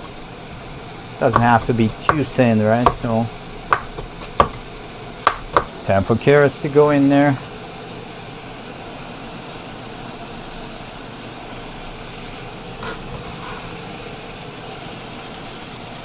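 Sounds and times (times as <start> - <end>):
beef and onions sizzling in a pot: 0.0 - 16.0.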